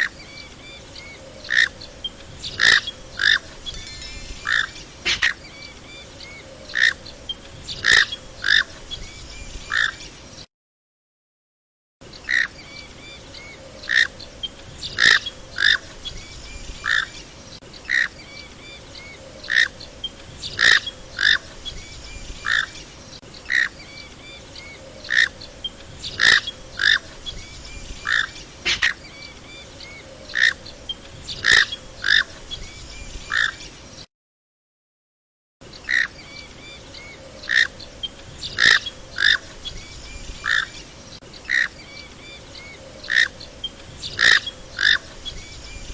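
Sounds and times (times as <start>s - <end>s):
faint steady background noise: 0.0s - 10.5s, 12.0s - 34.1s, 35.6s - 45.9s
duck calling: 28.6s - 29.0s.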